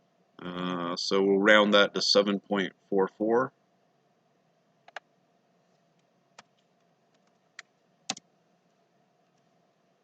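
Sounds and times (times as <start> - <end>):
computer mouse clicking: 4.8 - 5.1, 6.0 - 8.3.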